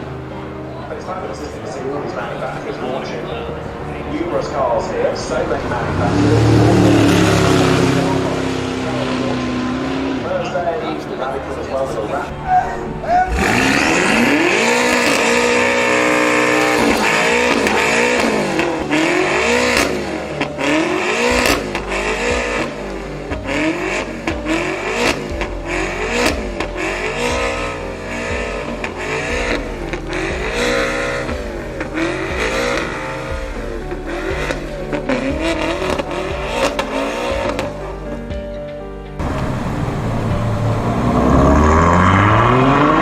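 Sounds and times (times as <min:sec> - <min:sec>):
sports car engine revving: 0:03.5 - 0:12.0, 0:13.3 - 0:38.5, 0:39.2 - 0:43.0
exhaust cracks: 0:04.1 - 0:38.2, 0:39.2 - 0:43.0.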